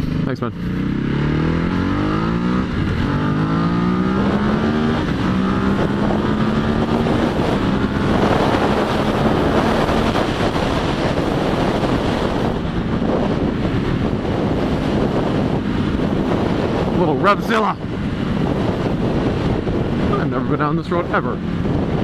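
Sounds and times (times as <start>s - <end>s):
motorcycle engine accelerating: 0.0s - 22.0s
wind noise on microphone: 0.8s - 22.0s.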